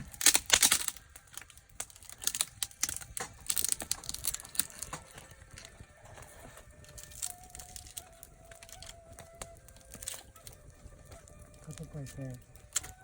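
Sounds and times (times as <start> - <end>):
campfire crackling and popping: 0.0 - 13.0.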